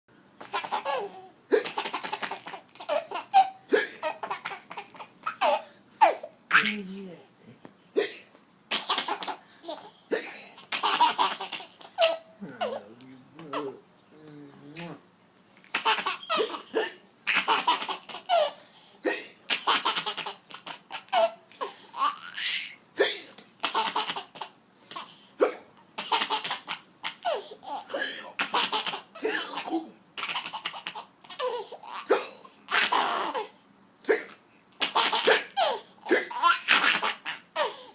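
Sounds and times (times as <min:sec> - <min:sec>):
baby laughing: 0:00.4 - 0:06.8, 0:08.7 - 0:13.8, 0:15.7 - 0:18.6, 0:19.5 - 0:22.8, 0:23.6 - 0:25.2, 0:26.0 - 0:33.6, 0:34.8 - 0:37.9.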